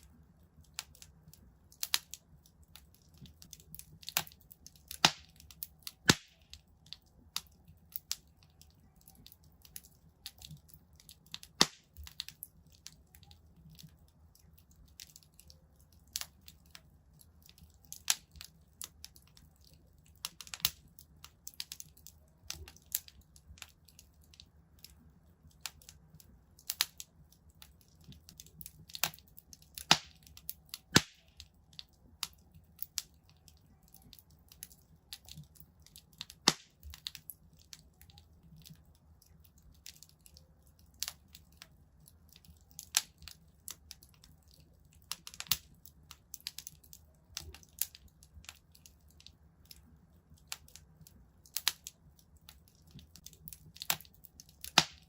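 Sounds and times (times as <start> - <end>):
low rumble of flames: 0.0 - 55.0
wood fire crackling and popping: 0.0 - 55.0.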